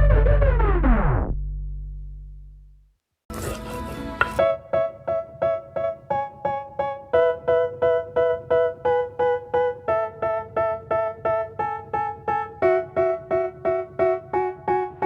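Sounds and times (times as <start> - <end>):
piano-like keyboard repeated notes: 4.1 - 15.0.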